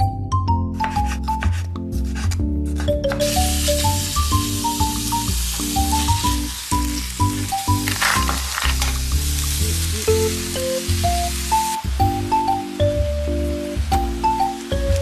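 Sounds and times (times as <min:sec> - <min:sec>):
fried rice sizzling in a pan: 0:03.2 - 0:15.0.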